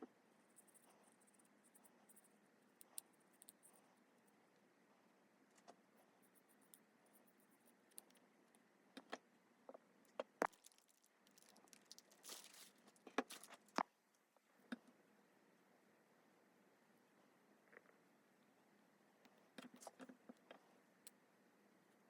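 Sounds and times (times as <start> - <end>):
scratchy rustle: 11.5 - 13.7.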